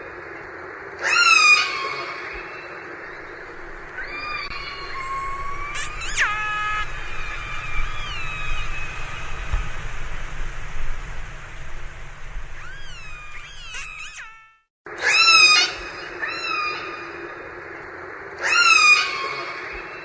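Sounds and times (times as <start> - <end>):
steady hiss: 0.0 - 14.2
orca calls underwater: 4.1 - 8.9.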